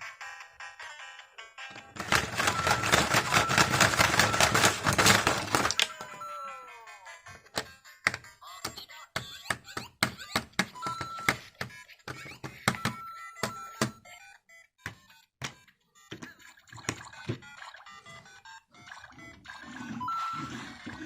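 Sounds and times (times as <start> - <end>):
toy figure thunking on plastic bricks: 2.0 - 6.0
electronic game beeps and jingles: 2.0 - 21.0.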